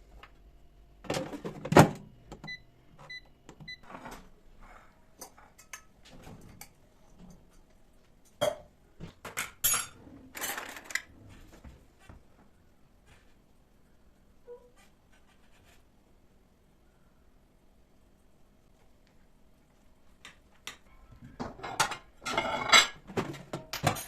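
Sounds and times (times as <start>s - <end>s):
appliance electronic beeps: 2.4s - 3.9s
dishes and utensils clattering: 5.2s - 7.7s, 8.4s - 11.1s, 21.4s - 24.0s.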